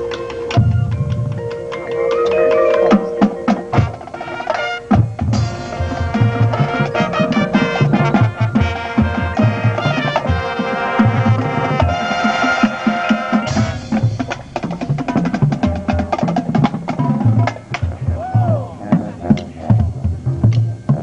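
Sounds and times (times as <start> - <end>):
percussion music: 0.0 - 21.0.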